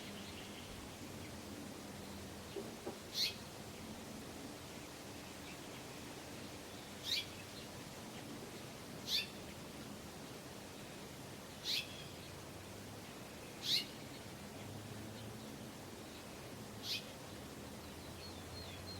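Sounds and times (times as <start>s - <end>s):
finch chirping: 3.2s - 3.4s, 11.6s - 12.0s, 13.6s - 13.9s, 16.8s - 17.1s.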